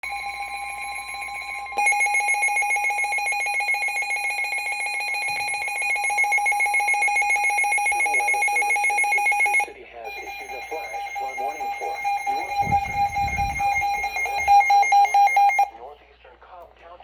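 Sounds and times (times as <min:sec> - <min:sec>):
piercing alert tone: 0:06.2 - 0:15.7.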